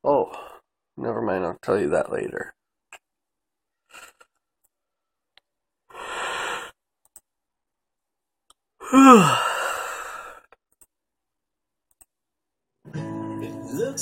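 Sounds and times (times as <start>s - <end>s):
man breathing in: 5.9s - 6.8s, 8.8s - 10.6s
man sighing: 8.8s - 10.4s.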